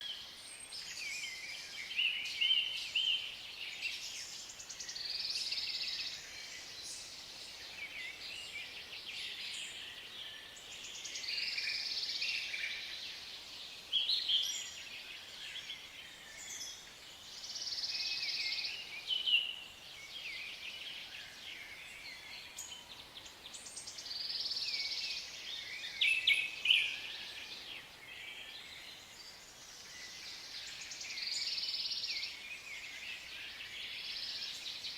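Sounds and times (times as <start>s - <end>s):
songbirds singing: 0.0s - 34.9s.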